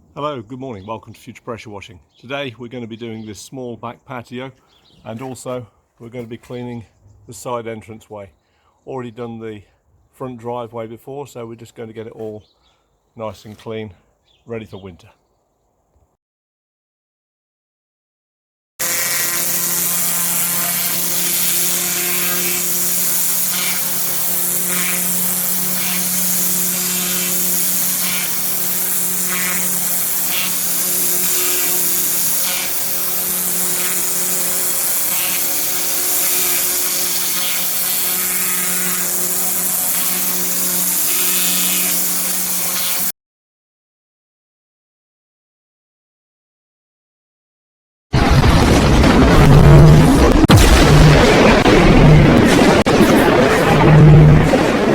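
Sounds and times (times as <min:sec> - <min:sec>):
pressure washer motor hum: 0:18.8 - 0:43.1
water jet hissing: 0:18.8 - 0:43.1.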